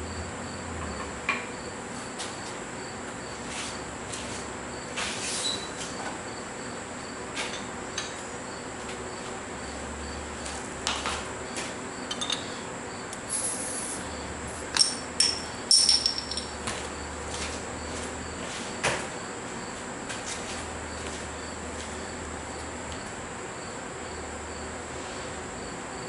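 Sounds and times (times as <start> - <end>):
light metal clinks and taps: 14.8 - 16.6.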